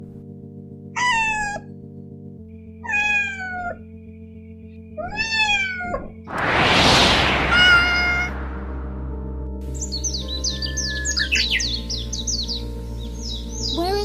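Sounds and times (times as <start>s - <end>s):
kitten meowing: 1.0s - 1.7s, 2.8s - 3.8s, 5.0s - 6.1s
loud rushing whoosh: 6.3s - 9.6s
low music drone: 6.3s - 14.0s.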